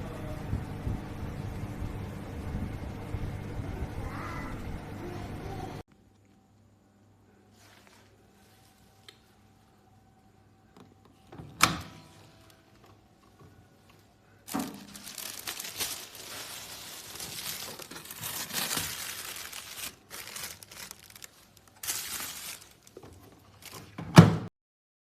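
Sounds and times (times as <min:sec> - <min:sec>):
plastic crinkling and rustling: 0:14.4 - 0:24.0.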